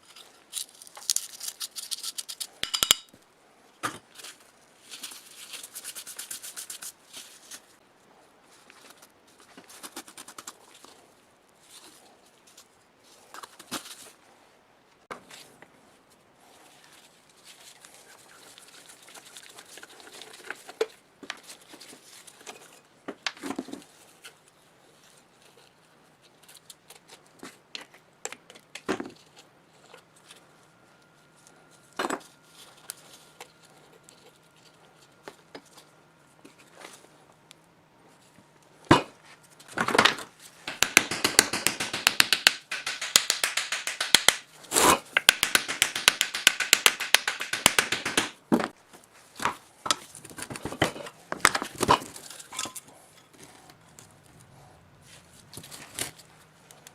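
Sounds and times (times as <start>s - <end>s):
metal parts and tools clicking: 0.5s - 3.2s.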